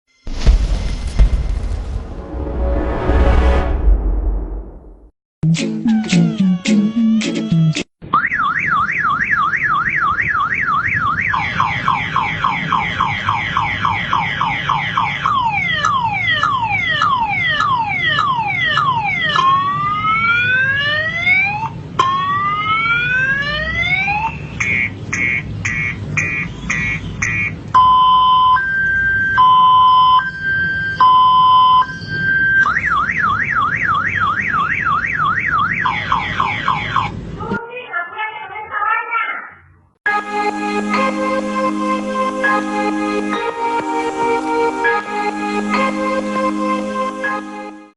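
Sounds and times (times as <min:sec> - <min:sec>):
car alarm siren cycling tones: 0:05.9 - 0:37.2.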